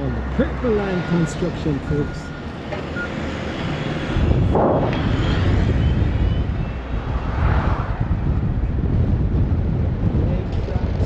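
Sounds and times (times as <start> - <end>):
road traffic rumble: 0.0 - 11.0
vehicles passing: 0.0 - 11.0
wind buffeting microphone: 3.6 - 11.0.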